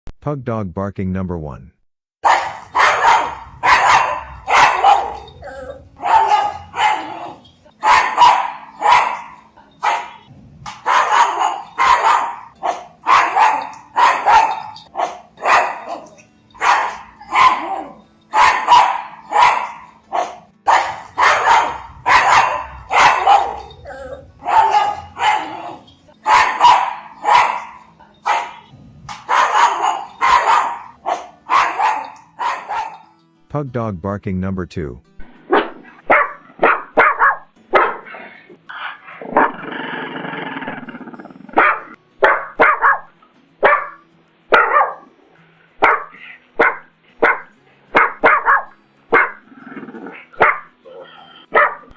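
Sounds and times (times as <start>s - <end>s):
dog barking sharply: 2.2s - 5.3s, 6.0s - 33.0s, 35.5s - 38.1s, 41.6s - 45.0s, 45.8s - 49.4s, 50.4s - 50.7s, 51.5s - 51.9s.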